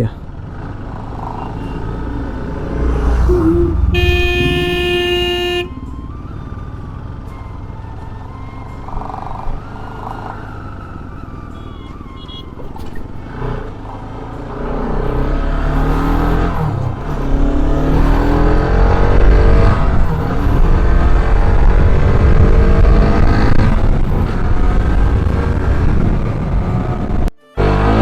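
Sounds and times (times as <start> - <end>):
motorcycle engine revving: 0.0 - 11.4, 12.1 - 28.0
low wind rumble: 2.1 - 8.4, 16.0 - 27.3.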